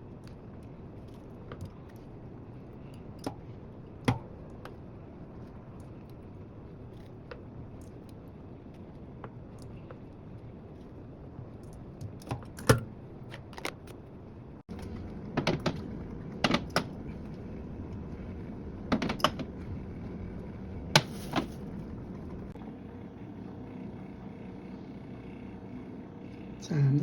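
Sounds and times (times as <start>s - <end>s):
items clicking and knocking: 18.9s - 19.6s.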